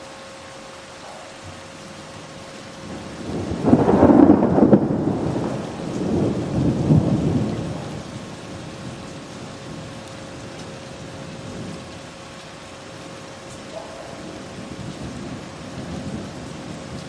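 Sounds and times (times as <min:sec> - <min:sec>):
steady rain: 0:00.0 - 0:17.0
thunder rolling: 0:02.8 - 0:09.1.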